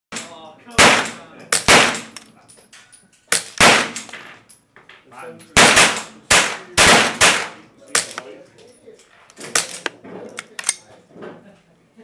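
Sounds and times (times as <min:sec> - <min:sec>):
pistol shots echoing: 0:00.2 - 0:02.2, 0:03.4 - 0:04.3, 0:05.6 - 0:08.2.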